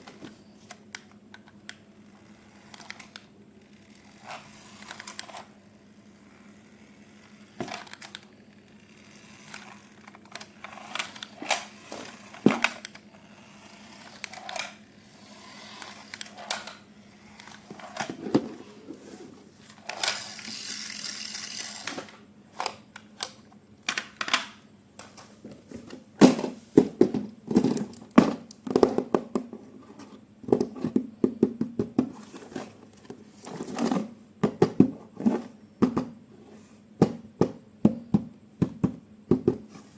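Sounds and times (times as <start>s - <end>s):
faint steady hum: 0.0s - 39.9s
plastic and cardboard clicks and knocks: 34.4s - 36.2s.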